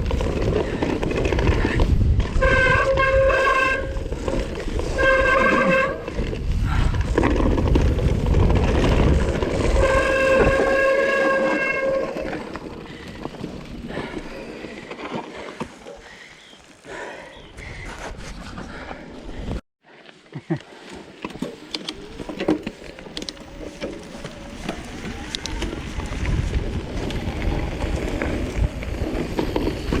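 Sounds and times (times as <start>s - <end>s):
rumble of wind and tyres: 0.0s - 19.6s, 20.8s - 30.0s.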